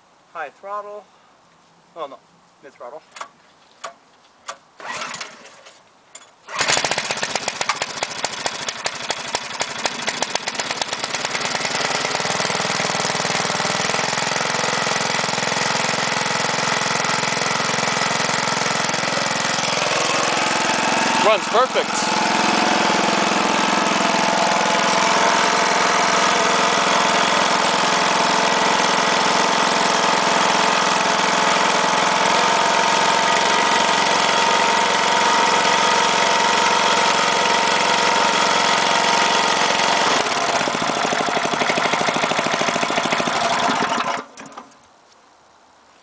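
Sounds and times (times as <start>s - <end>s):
tiller engine running: 4.8s - 5.6s, 6.5s - 44.8s.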